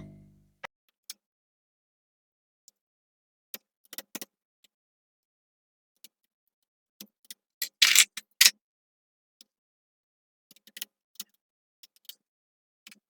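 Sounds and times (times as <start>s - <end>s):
small parts clicking and tapping: 7.6s - 8.5s.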